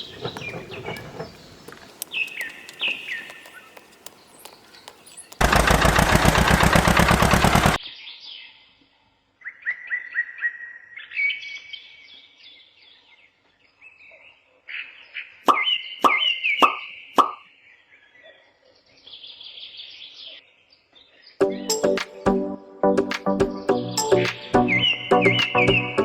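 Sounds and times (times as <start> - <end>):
small birds chirping: 0.0 - 6.7, 7.6 - 22.2, 23.4 - 26.0
loud rapid rattle: 5.4 - 7.8.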